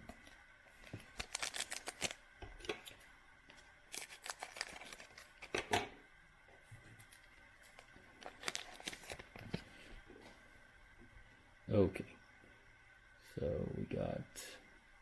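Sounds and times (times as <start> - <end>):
foil wrapper crinkling and tearing: 0.8 - 2.2, 3.9 - 5.7, 7.1 - 9.6.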